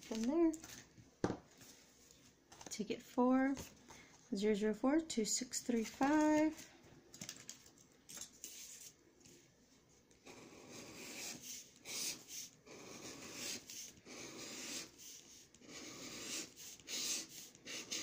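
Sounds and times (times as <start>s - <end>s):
scratching lottery ticket: 10.2s - 18.0s.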